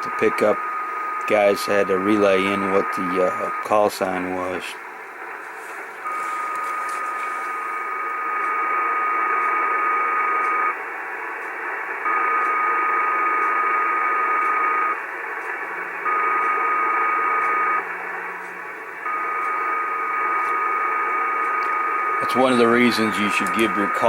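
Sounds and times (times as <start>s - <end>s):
shortwave receiver hiss: 0.0s - 24.0s
whistle-like interference tone: 6.0s - 7.8s.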